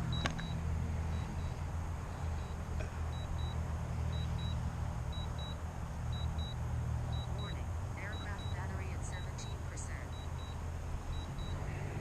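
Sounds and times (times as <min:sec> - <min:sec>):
steady low rumble: 0:00.0 - 0:12.0
short high alarm beeps: 0:02.4 - 0:11.7.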